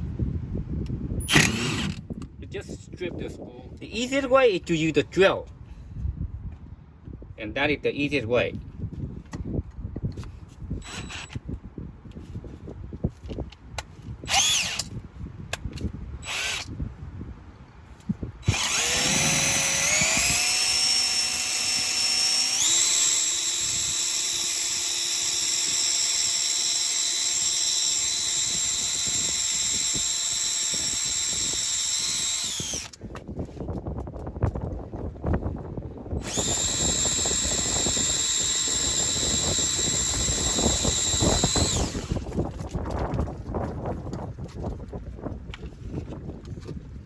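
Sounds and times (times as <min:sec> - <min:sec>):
electric drill whining: 0:01.2 - 0:02.1, 0:10.8 - 0:11.4, 0:14.3 - 0:14.9, 0:16.2 - 0:16.7, 0:18.4 - 0:33.0, 0:36.2 - 0:42.4.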